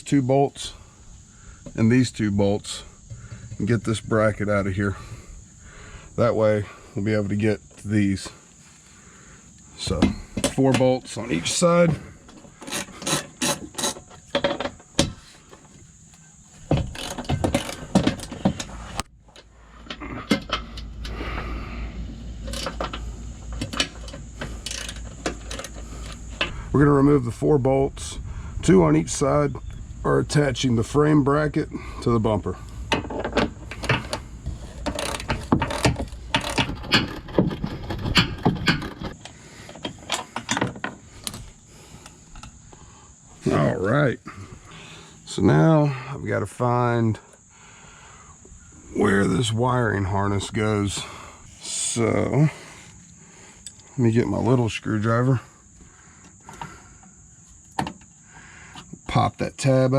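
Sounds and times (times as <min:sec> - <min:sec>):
socket ratchet clicking on bolts: 0:23.6 - 0:26.2.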